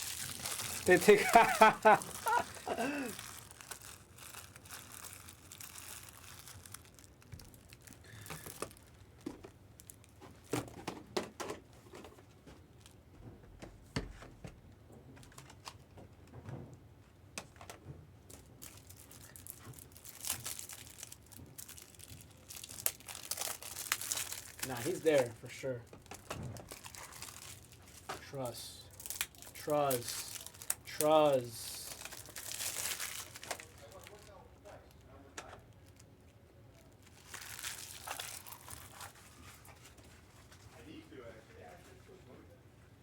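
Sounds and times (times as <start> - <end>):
foil wrappers crinkling and tearing: 0.0 - 10.7, 18.3 - 40.1.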